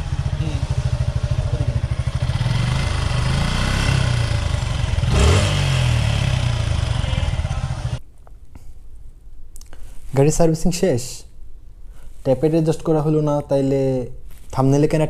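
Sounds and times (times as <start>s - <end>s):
motorcycle engine revving: 0.0s - 8.0s.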